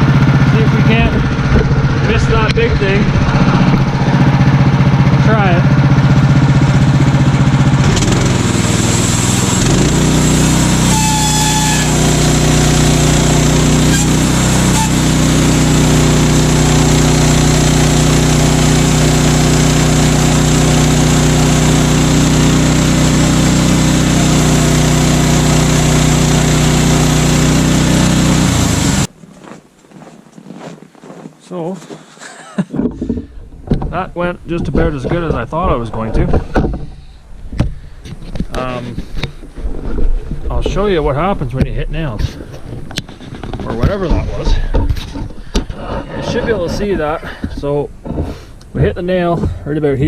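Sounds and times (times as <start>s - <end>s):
sawmill engine running: 0.0s - 30.3s
band blade cutting wood: 7.9s - 29.1s.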